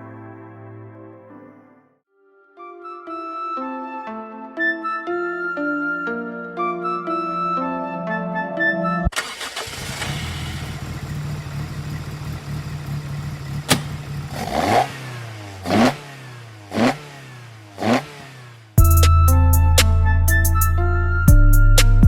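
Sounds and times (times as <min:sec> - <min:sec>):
music: 0:00.0 - 0:09.1, 0:18.8 - 0:22.0
car engine idling and revving: 0:09.1 - 0:18.8
sharp click: 0:13.7 - 0:13.9.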